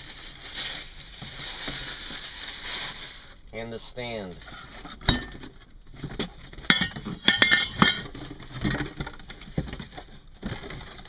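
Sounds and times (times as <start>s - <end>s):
hard parts clinking: 5.1s - 5.5s, 6.2s - 8.2s.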